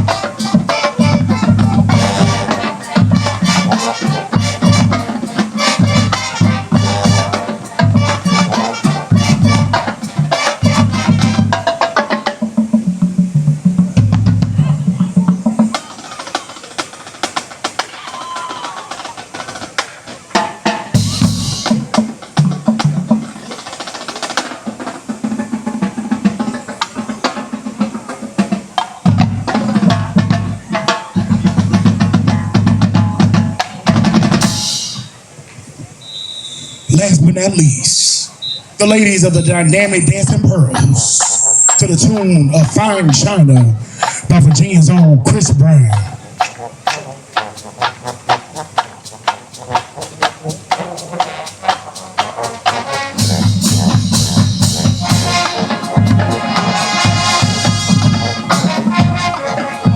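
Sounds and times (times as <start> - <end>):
pitched bass drums: 0.0 - 15.9, 20.4 - 23.5, 28.6 - 35.2, 38.8 - 59.9
snare drum strokes and rolls: 0.0 - 35.2, 36.2 - 59.9
marching band playing loudly: 0.0 - 35.3, 36.7 - 59.9.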